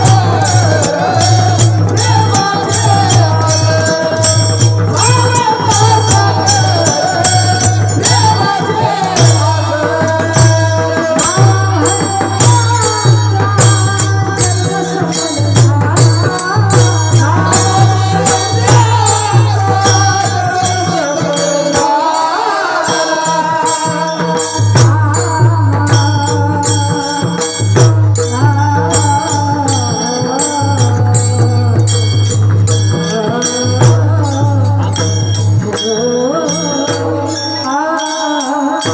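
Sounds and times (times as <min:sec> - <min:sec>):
hand drum playing: 0:00.0 - 0:21.0
devotional singing: 0:00.0 - 0:38.9
small hand cymbals beating: 0:00.0 - 0:38.9.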